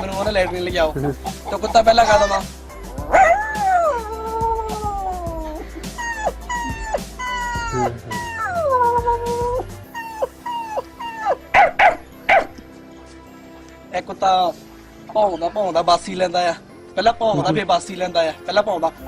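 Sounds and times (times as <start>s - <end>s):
man imitating dog whines: 3.1s - 11.4s
man imitating dog barks: 6.1s - 9.4s.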